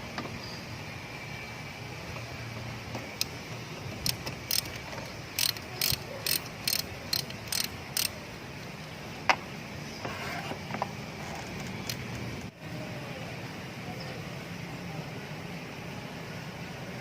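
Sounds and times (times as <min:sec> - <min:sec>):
ratchet wrench clicking: 0:03.2 - 0:08.2.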